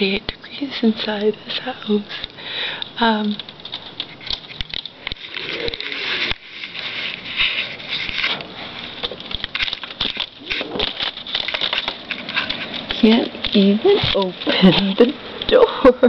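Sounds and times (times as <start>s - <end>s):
fabric rustling and crackling: 3.1s - 15.3s.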